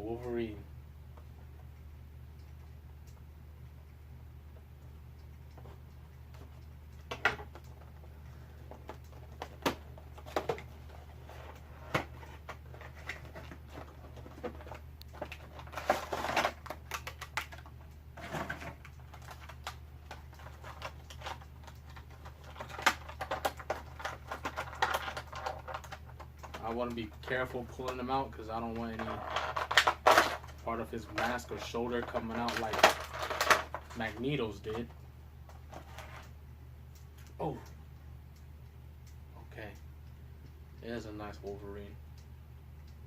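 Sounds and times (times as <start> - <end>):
low steady hum: 0.0 - 43.0
packaging crinkling and clicking: 11.5 - 28.0, 28.7 - 36.3.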